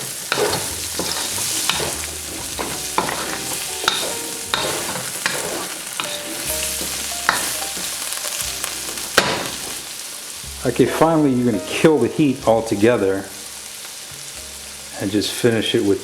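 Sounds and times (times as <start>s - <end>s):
utensil knocking and scraping pan: 0.0s - 9.8s
food sizzling in a pan: 0.0s - 16.0s.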